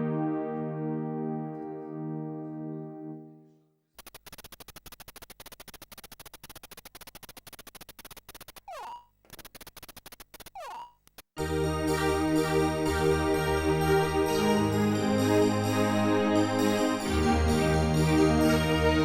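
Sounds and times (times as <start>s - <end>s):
held synth chord: 0.0s - 3.6s, 11.4s - 19.0s
quick falling synth zip: 4.0s - 11.0s
rapid train of synth clicks: 4.0s - 11.2s.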